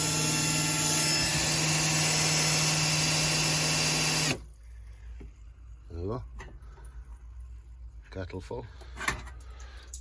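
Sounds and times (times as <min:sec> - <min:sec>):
drill-driven water pump whining: 0:00.0 - 0:04.5.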